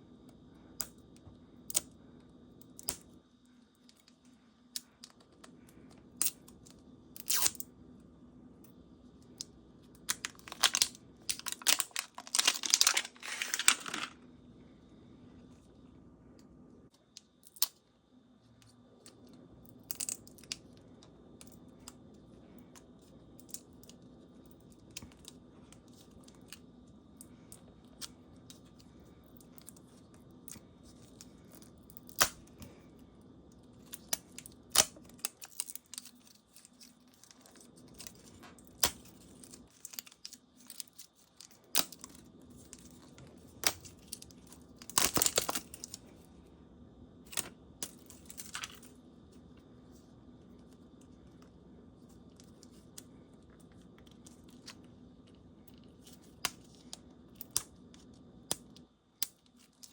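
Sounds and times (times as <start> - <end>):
paper tearing and crinkling: 11.4 - 14.1.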